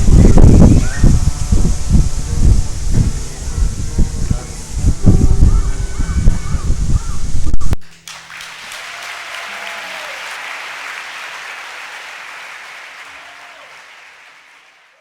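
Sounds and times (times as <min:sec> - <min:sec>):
small group applauding: 0:07.8 - 0:15.0.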